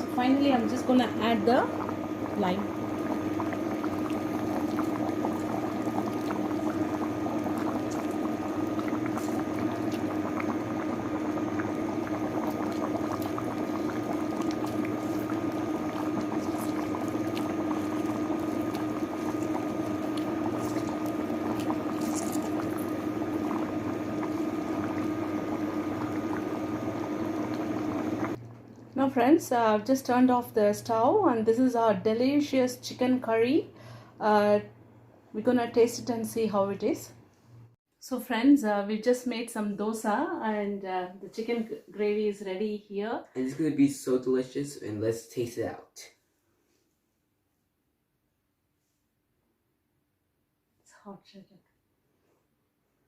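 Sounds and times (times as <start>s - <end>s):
curry bubbling in a pot: 0.0s - 29.9s
steady low hum: 0.0s - 35.0s.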